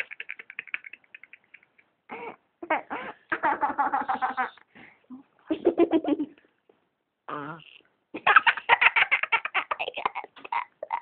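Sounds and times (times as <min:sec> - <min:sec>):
person laughing: 0:08.4 - 0:11.0.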